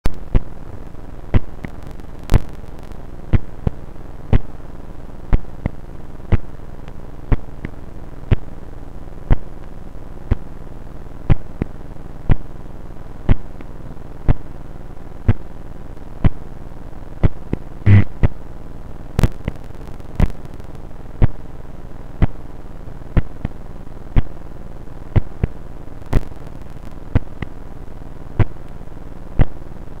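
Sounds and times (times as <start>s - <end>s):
click-like heartbeat pulses: 0.1s - 0.5s, 1.3s - 2.5s, 3.3s - 4.5s, 5.3s - 6.5s, 7.3s - 8.5s, 9.3s - 9.5s, 10.3s - 10.5s, 11.3s - 11.7s, 13.3s - 13.7s, 15.3s - 15.5s, 17.2s - 18.4s, 19.2s - 19.6s, 20.2s - 20.4s, 21.2s - 21.4s, 22.2s - 22.4s, 23.2s - 23.6s, 25.2s - 26.3s, 27.2s - 27.5s
steady hiss: 0.1s - 30.0s.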